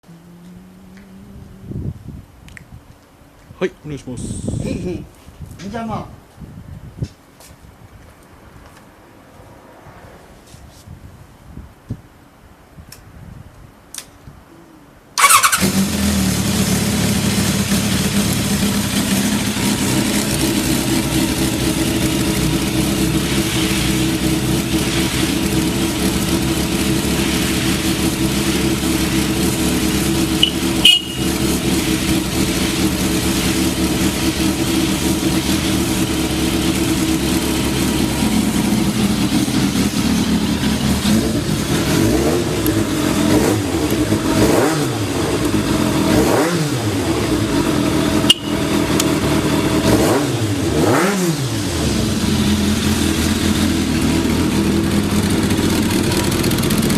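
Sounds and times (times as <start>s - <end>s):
motorcycle electric starter: 15.2s - 44.3s
motorcycle engine idling: 15.2s - 44.4s, 47.2s - 49.9s, 51.8s - 56.9s.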